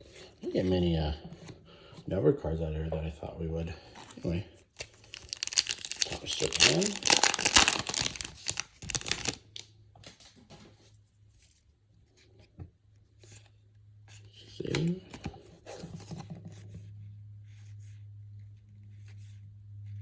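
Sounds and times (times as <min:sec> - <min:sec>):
cards handling sounds: 0:03.9 - 0:10.7, 0:14.2 - 0:16.6
wrapper crinkling and tearing: 0:04.0 - 0:09.7.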